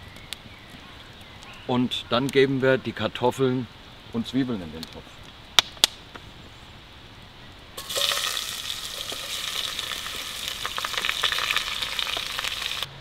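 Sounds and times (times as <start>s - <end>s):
small crackles of frying: 0.0s - 12.9s
potatoes sizzling in hot oil: 7.8s - 12.9s.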